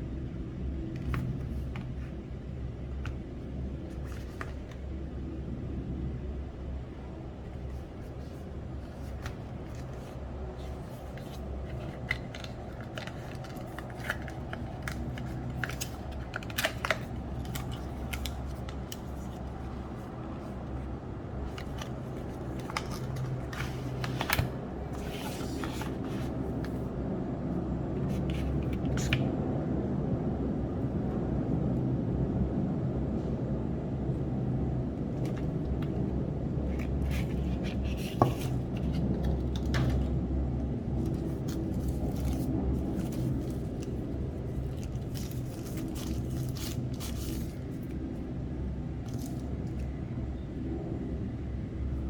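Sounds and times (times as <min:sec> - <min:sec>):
steady low hum: 0:00.0 - 0:52.0
packaging rustle: 0:03.0 - 0:04.9, 0:07.4 - 0:26.9, 0:41.0 - 0:48.1, 0:49.1 - 0:49.9.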